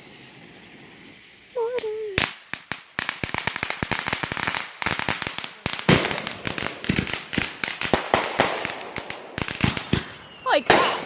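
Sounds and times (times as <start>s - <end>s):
fireworks cracking and popping: 0.0s - 11.0s
loud firework bang: 5.9s - 11.0s.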